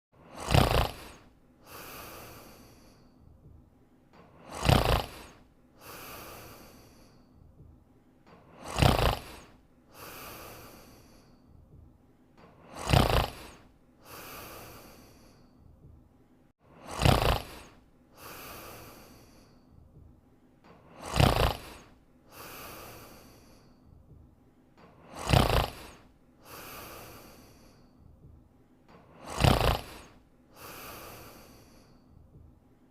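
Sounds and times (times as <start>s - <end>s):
person snoring: 0.2s - 3.2s, 4.2s - 7.3s, 8.4s - 11.4s, 12.5s - 15.6s, 16.7s - 19.8s, 20.8s - 23.8s, 24.9s - 28.0s, 29.0s - 32.0s
soft out-breath: 0.2s - 3.6s, 4.2s - 7.7s, 8.3s - 24.2s, 24.8s - 32.9s.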